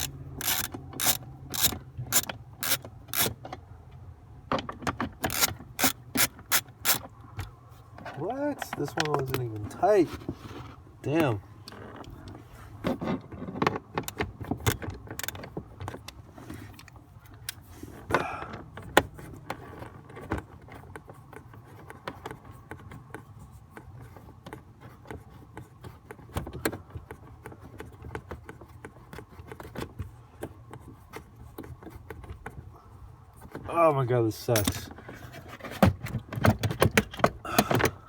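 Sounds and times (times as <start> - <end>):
metallic tool clicks and rattles: 0.0 - 3.3, 5.2 - 7.0.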